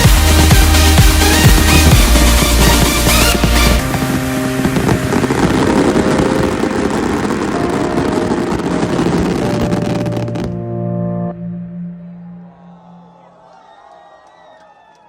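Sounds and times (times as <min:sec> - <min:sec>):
fireworks crackling: 0:00.0 - 0:10.6
background music: 0:00.0 - 0:13.6.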